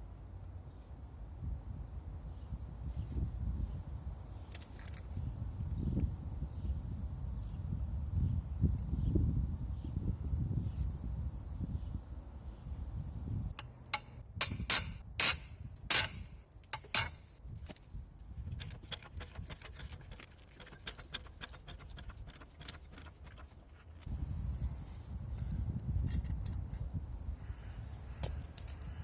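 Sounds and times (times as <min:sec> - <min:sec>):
loud sharp knocks on metal: 0:14.0 - 0:17.2.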